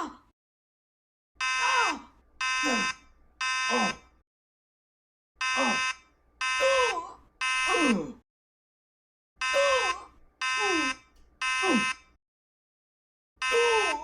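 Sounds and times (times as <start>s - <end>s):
fire alarm buzzer blasts: 1.4s - 1.8s, 2.4s - 4.2s, 5.4s - 7.8s, 9.4s - 12.2s, 13.4s - 14.0s.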